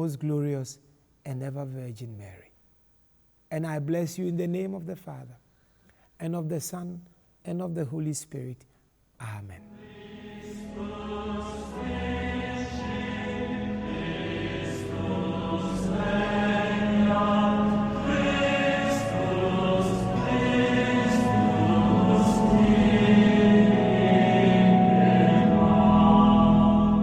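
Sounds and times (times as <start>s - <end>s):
voices singing a chant: 9.6s - 27.0s.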